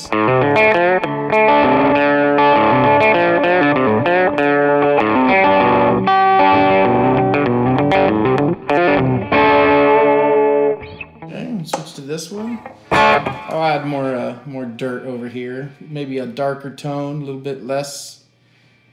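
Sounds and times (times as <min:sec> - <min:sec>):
overdriven electric guitar strumming: 0:00.0 - 0:14.4.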